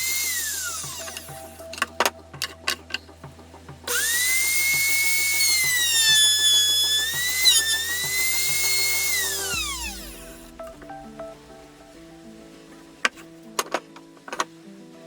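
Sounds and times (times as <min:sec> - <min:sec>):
power tool motor whining: 0:03.9 - 0:10.5.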